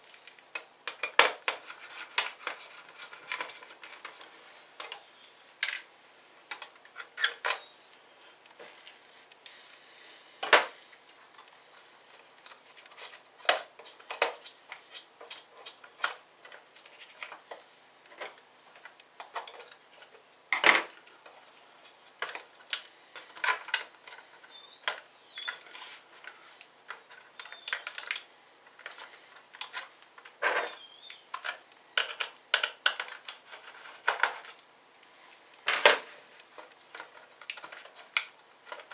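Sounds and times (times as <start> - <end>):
clicks and knocks of laptop parts: 0.2 - 5.9, 10.4 - 10.8, 12.4 - 21.3, 22.2 - 34.6, 35.6 - 38.9.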